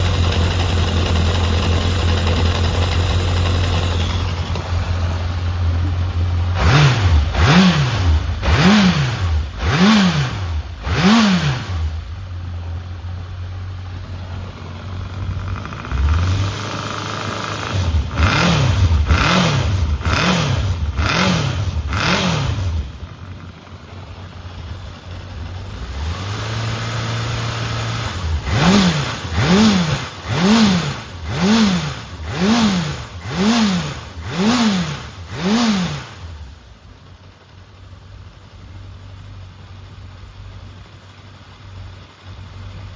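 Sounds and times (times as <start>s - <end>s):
motorcycle engine idling and revving: 0.0s - 42.9s.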